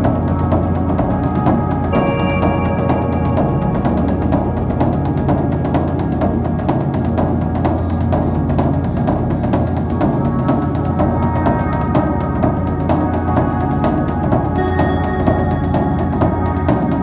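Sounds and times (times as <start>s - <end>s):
high held tones: 0.0s - 6.6s
percussion hits: 0.0s - 13.5s
low drone: 0.0s - 17.0s.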